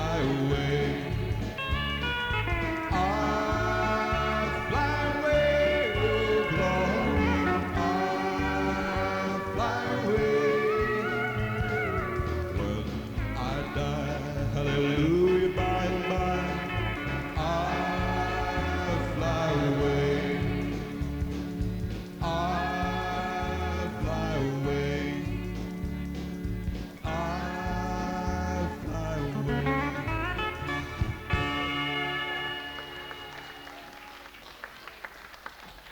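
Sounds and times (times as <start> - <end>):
pedal steel guitar sliding notes: 0.0 - 14.0, 27.1 - 33.8
drums and bass beat: 0.0 - 33.4
country band playing: 0.0 - 35.1.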